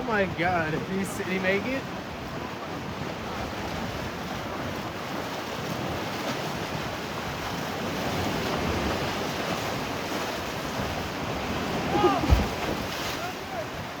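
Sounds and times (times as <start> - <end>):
waves washing on shore: 0.0 - 14.0
wind on microphone: 1.6 - 14.0.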